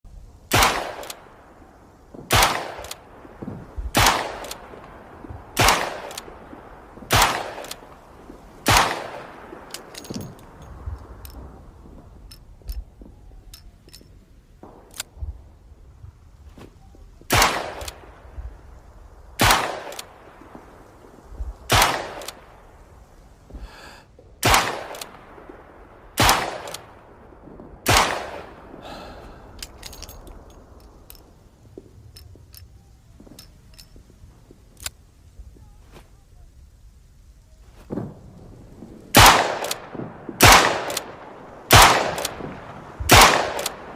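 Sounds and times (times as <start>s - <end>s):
metallic clicks and rattles: 9.7s - 11.5s, 29.6s - 31.5s, 32.1s - 35.0s.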